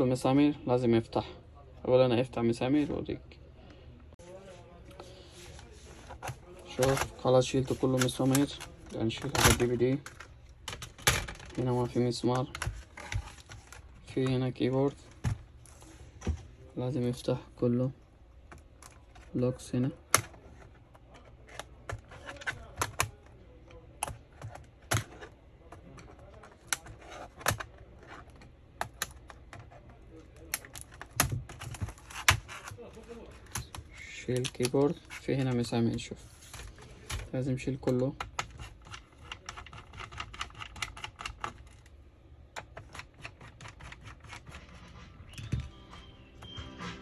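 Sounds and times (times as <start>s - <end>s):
plastic and metal parts clicking: 6.1s - 15.4s, 20.0s - 44.6s
plastic keyboard latches clicking: 24.0s - 29.8s, 30.4s - 32.8s, 37.1s - 41.8s.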